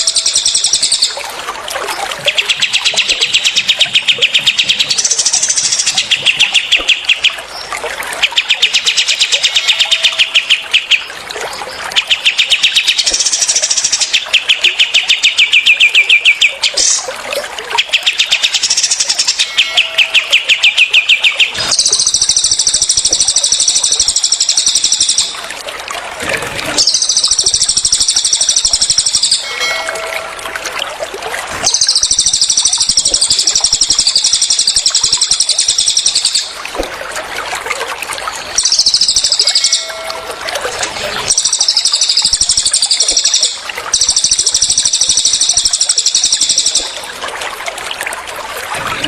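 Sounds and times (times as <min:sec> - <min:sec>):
songbird buzzy trills: 0:02.2 - 0:11.2, 0:17.7 - 0:25.4, 0:31.6 - 0:36.6, 0:38.3 - 0:47.1
songbird rattling trills: 0:02.3 - 0:11.1, 0:17.8 - 0:25.4, 0:26.8 - 0:30.5, 0:31.6 - 0:36.6, 0:38.5 - 0:47.1.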